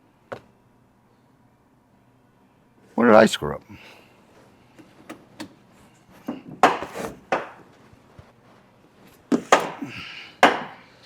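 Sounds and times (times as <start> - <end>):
tools knocking and clattering: 9.3 - 10.8.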